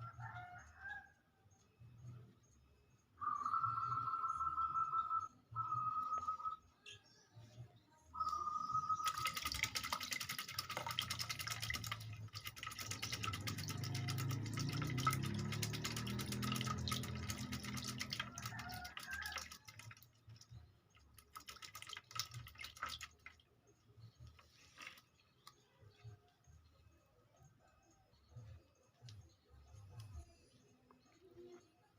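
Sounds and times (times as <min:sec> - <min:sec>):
water running and splashing: 0:09.0 - 0:23.4.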